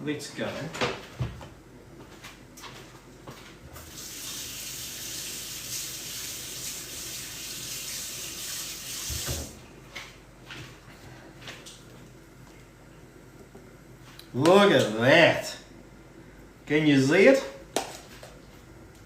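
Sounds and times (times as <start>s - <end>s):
water running into sink: 3.8s - 9.6s.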